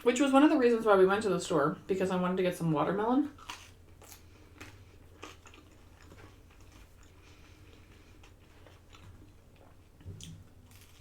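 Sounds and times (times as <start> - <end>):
faint chewing: 3.4 - 11.0.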